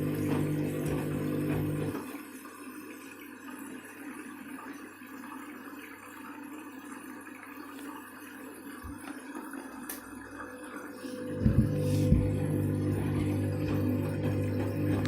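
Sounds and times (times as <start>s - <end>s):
water rushing into washing machine: 0.0s - 15.0s
washing machine drum thumping: 0.1s - 1.9s, 11.4s - 12.5s, 13.2s - 15.0s.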